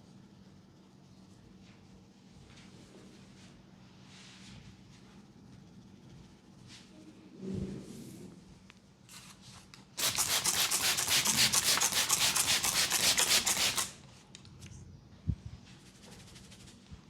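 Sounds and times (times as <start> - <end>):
hands rubbing briskly: 10.0 - 13.9, 15.8 - 17.0.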